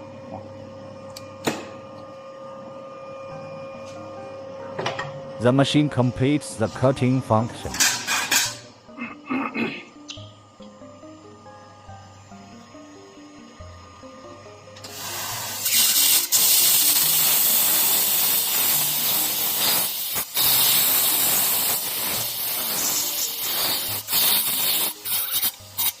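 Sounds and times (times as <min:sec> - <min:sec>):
background music: 0:02.9 - 0:26.0
gas jet hissing: 0:14.8 - 0:26.0.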